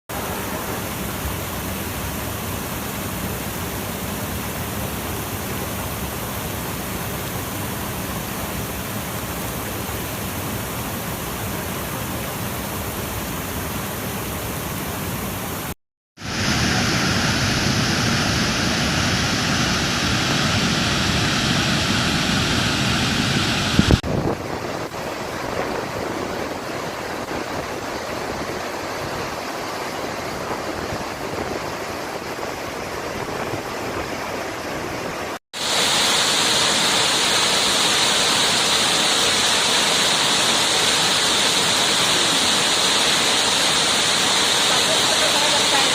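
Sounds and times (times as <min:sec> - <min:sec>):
waterfall roaring: 0:00.1 - 0:45.9.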